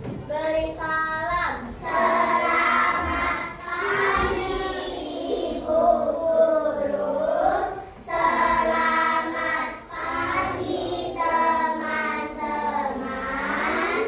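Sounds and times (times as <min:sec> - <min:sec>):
children singing in unison: 0:01.7 - 0:14.0.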